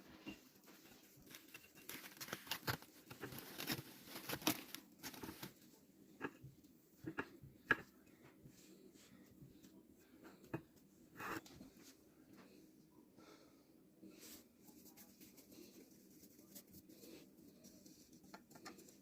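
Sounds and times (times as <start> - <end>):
soft crinkling and crackling: 0.0 - 12.6.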